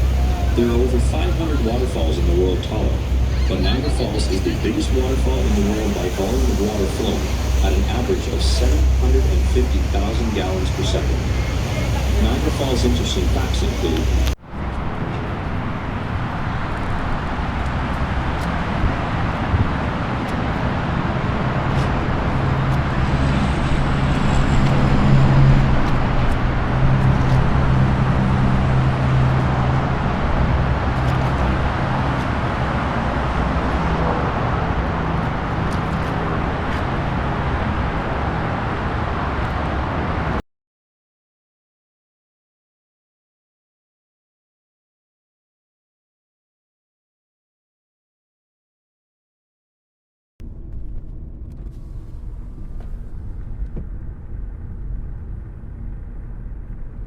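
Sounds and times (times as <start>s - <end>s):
loud rushing roar: 0.0s - 40.4s
low hum: 0.0s - 40.4s, 50.4s - 57.0s.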